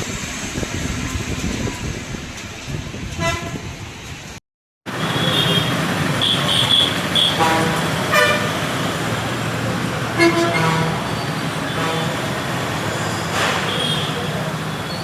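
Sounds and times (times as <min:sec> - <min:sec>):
street traffic hiss: 0:00.0 - 0:15.0
car horn blast: 0:04.9 - 0:08.6, 0:10.2 - 0:11.0
high-pitched horn toots: 0:06.2 - 0:08.6, 0:10.2 - 0:12.2.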